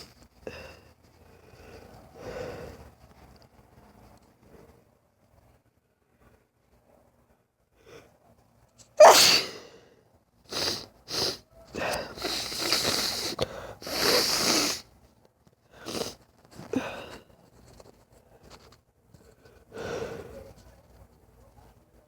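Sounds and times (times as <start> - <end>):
woman sneezing: 9.0 - 9.6.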